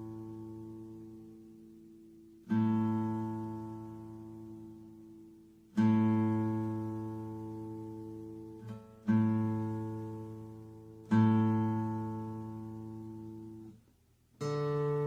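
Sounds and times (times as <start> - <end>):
acoustic guitar string plucked: 2.4 - 13.8.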